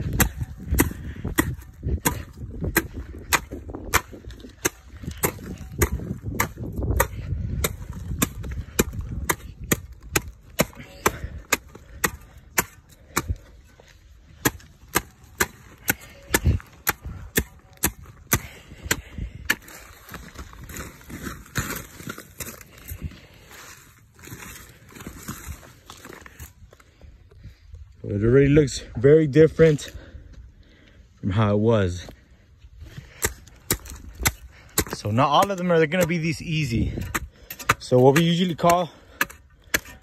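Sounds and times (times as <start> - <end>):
machete chopping palm trunk: 0.0 - 13.5, 14.3 - 19.8, 33.2 - 40.0.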